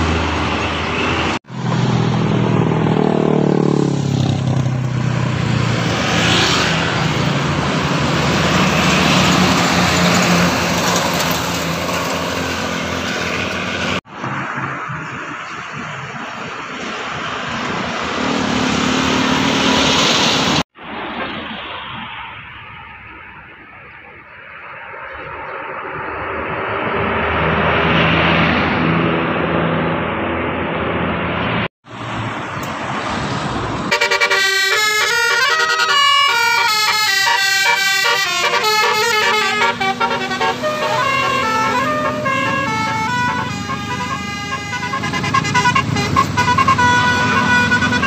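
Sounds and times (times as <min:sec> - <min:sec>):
passing vehicle engine and road noise: 0:00.0 - 0:48.0
bus engine running: 0:06.6 - 0:20.6, 0:29.9 - 0:48.0
bus air horn melody: 0:33.9 - 0:48.0.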